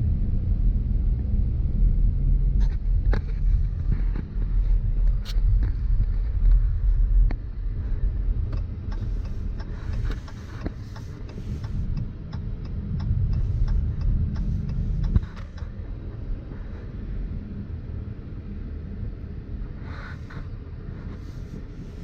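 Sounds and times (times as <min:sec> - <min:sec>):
car engine and road rumble: 0:00.0 - 0:22.0
light ticks: 0:08.4 - 0:15.7.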